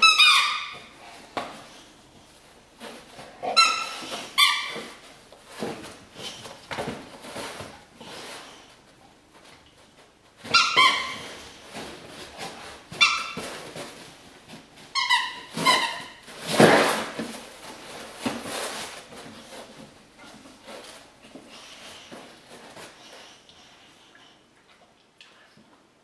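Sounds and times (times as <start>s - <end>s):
squeaky dog toy: 0.0s - 1.0s, 3.4s - 5.0s, 10.4s - 11.4s, 12.9s - 13.5s, 14.9s - 16.2s.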